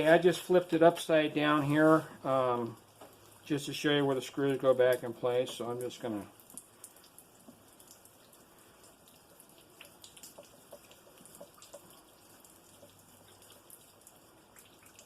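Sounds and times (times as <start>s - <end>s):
faint light clicks and taps: 4.8s - 8.1s, 9.8s - 15.0s.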